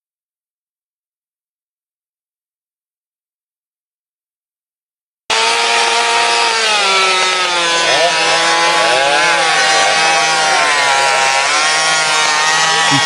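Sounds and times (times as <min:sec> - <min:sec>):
chainsaw cutting wood: 0:05.3 - 0:13.0.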